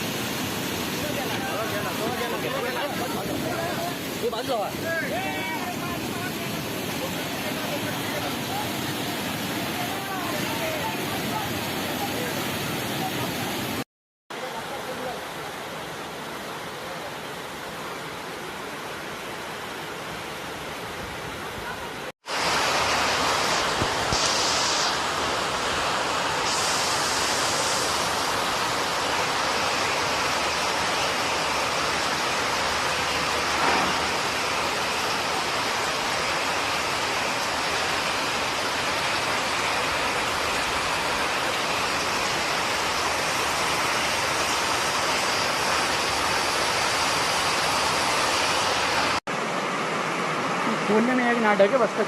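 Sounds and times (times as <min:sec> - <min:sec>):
floodwater rushing: 0:00.0 - 0:52.0.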